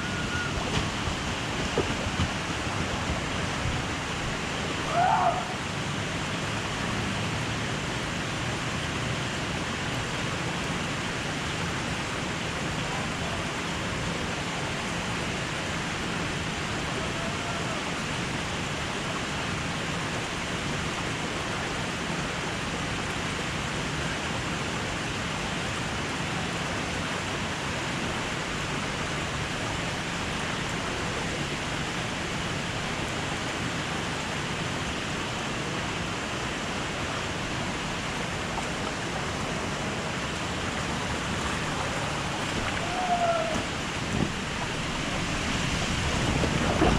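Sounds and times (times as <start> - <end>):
running and splashing water: 25.4 - 46.9
faint voices: 39.4 - 45.5.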